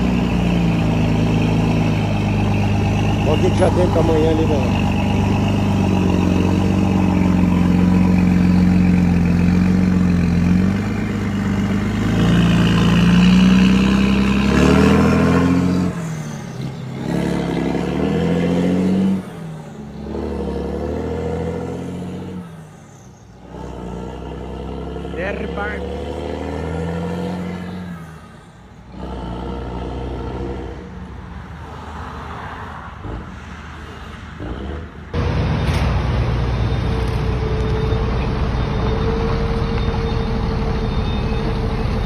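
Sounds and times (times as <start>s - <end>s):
truck diesel engine revving: 0.0s - 31.2s, 33.0s - 42.0s.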